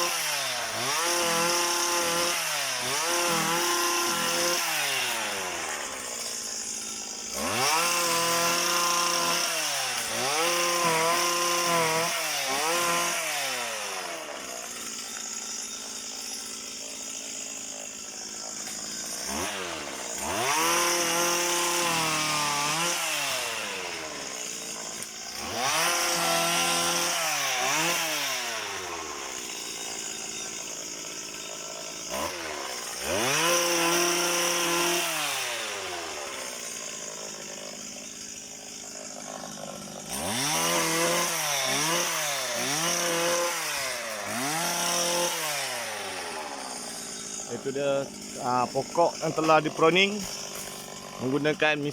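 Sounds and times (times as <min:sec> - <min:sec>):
small petrol engine revving: 0:00.0 - 0:06.0, 0:07.3 - 0:14.2, 0:19.2 - 0:24.4, 0:25.3 - 0:29.3, 0:32.1 - 0:36.6, 0:40.0 - 0:51.9.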